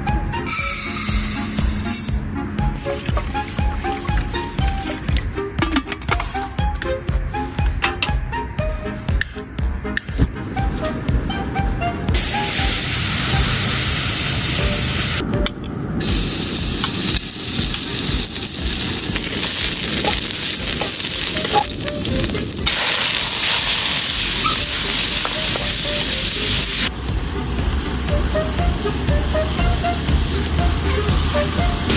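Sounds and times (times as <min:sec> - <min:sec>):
meat sizzling in a pan: 0:16.0 - 0:21.8, 0:22.4 - 0:26.9.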